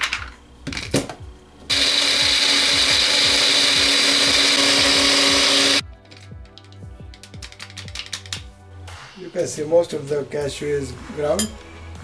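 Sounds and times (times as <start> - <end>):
electric grinder grinding nuts: 1.7 - 5.8.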